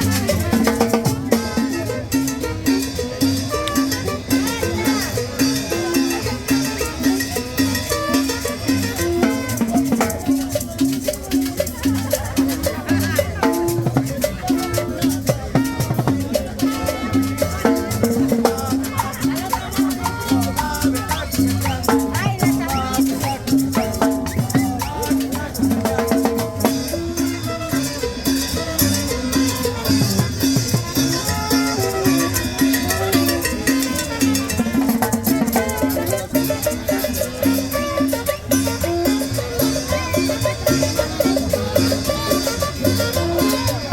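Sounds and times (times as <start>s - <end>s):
latin dance band music: 0.0s - 43.9s
melodic instrument notes: 0.0s - 43.9s
shaker and scraper percussion: 0.0s - 43.9s
repeating bass line: 12.9s - 27.2s.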